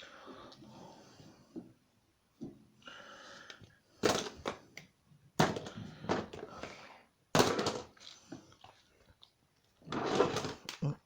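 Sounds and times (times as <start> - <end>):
plastic toys knocking together: 4.0 - 4.6, 5.4 - 6.7, 7.3 - 8.0
plastic toys rustling: 9.8 - 10.8.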